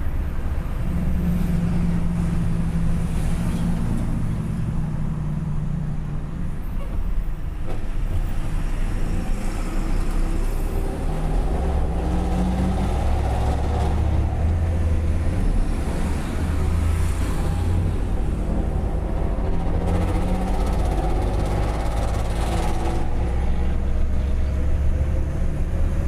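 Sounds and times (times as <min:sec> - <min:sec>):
vehicle engine loud exhaust: 0:08.0 - 0:26.0.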